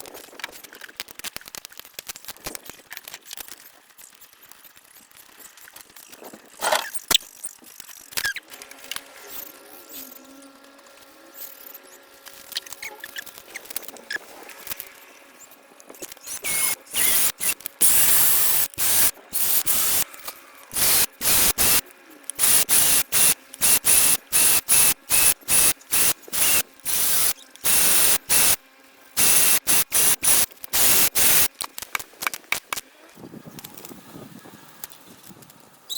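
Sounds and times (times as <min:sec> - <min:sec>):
short bursts of hissing: 0:16.3 - 0:20.1, 0:20.7 - 0:21.8, 0:22.4 - 0:28.6, 0:29.2 - 0:31.5.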